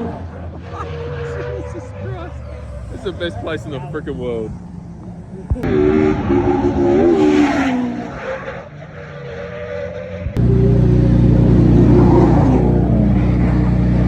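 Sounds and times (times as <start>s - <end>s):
car engine at high revs: 0.0s - 14.0s
loud steady engine drone: 10.2s - 14.0s.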